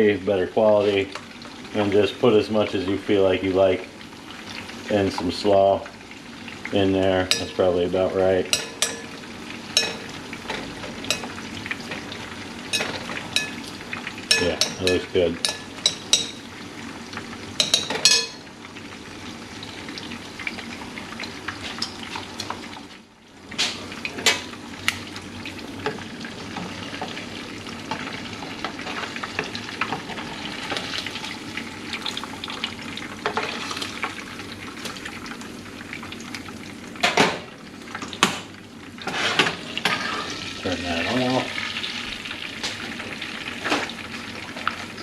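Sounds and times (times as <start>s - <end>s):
fish frying in hot oil: 0.0s - 45.0s
cookware clinking: 8.5s - 9.2s, 9.8s - 10.1s, 12.7s - 13.6s, 14.3s - 16.4s, 17.6s - 18.4s.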